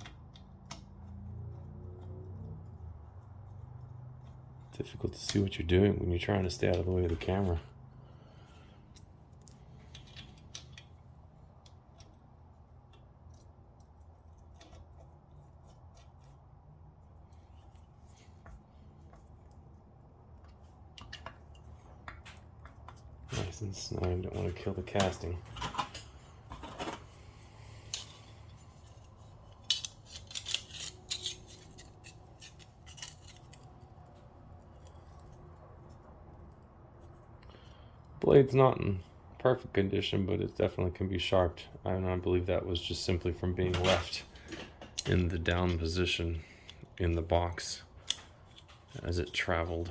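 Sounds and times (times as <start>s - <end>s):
low steady hum: 0.0s - 49.9s
metal parts clicking and tapping: 8.9s - 11.0s, 27.9s - 36.1s.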